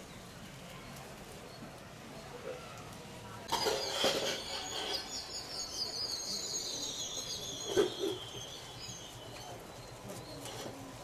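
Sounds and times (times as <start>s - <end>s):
birds twittering: 3.6s - 10.5s.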